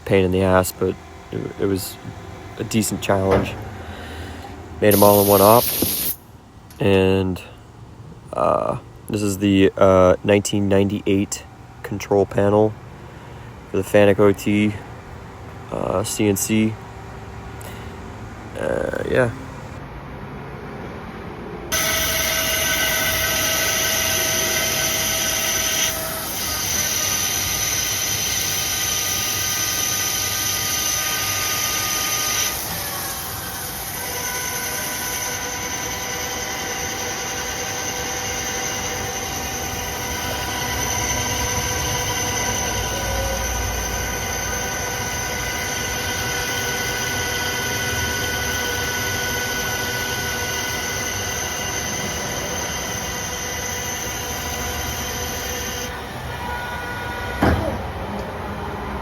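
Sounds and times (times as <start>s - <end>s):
cnc machine whining: 0.0s - 6.2s, 21.7s - 59.0s.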